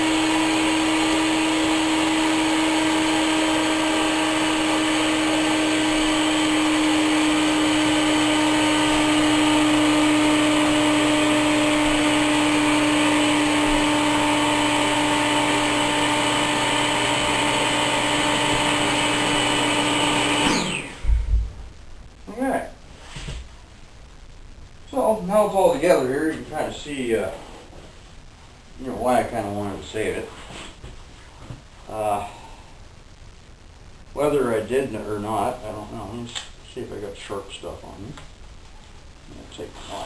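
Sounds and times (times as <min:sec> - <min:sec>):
electric air pump running: 0:00.0 - 0:21.5
motor winding down whine: 0:00.0 - 0:21.6.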